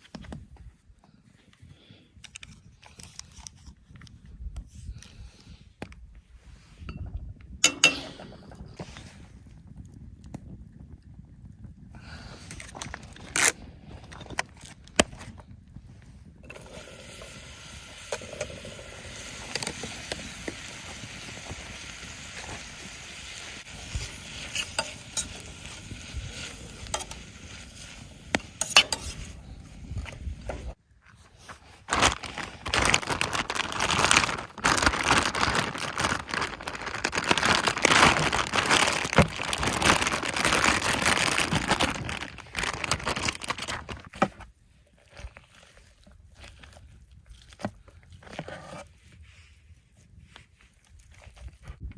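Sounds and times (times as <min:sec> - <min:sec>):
food sizzling in a pan: 0:16.6 - 0:29.2.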